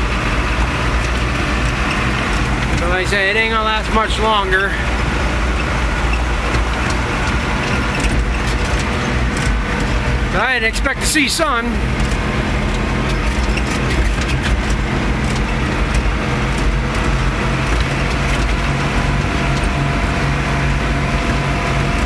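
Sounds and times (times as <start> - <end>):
tractor engine running: 0.0 - 22.0
rattling clicks: 5.0 - 10.3, 11.8 - 22.0.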